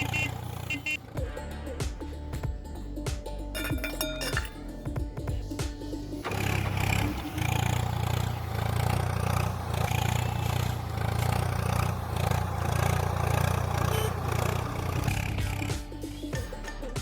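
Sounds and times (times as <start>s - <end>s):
small engine running with clatter: 0.0s - 1.4s, 6.2s - 16.8s.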